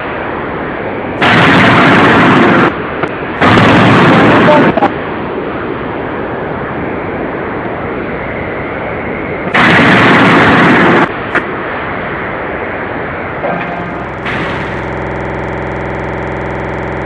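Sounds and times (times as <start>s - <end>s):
loud burst of noise: 0.0s - 5.2s, 9.4s - 17.0s
forging machinery noise: 1.2s - 4.8s, 9.4s - 11.5s, 13.2s - 17.0s.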